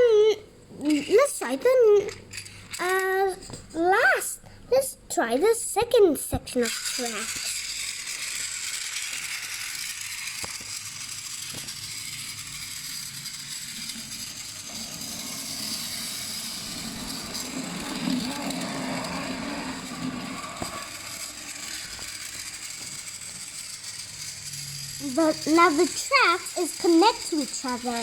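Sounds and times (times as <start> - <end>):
toy train motor whirring: 0.0 - 28.0
wheels clicking over track joints: 6.6 - 28.0.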